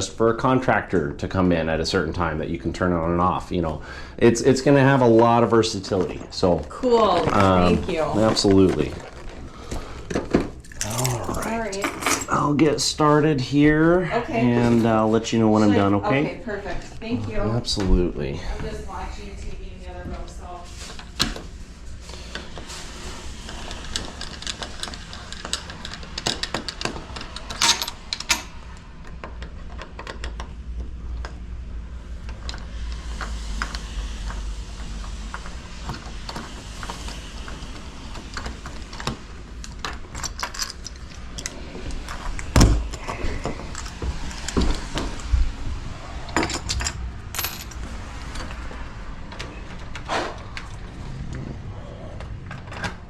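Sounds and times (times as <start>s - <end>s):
metal lock parts clinking: 10.6s - 12.4s, 23.8s - 28.6s, 38.3s - 41.5s, 46.3s - 48.6s.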